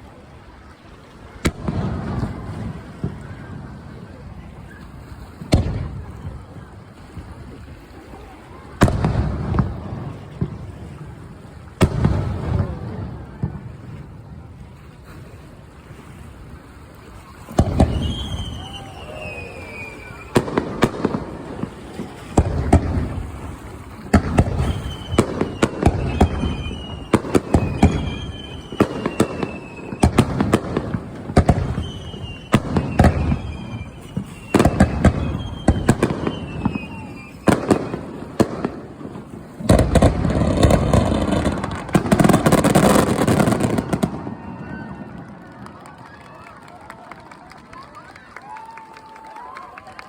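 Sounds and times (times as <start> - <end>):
fireworks crackle: 1.4 - 7.4, 8.8 - 15.2, 17.0 - 50.0
fireworks bangs: 1.4 - 15.2, 17.1 - 46.4
fireworks falling whistles: 17.2 - 45.6.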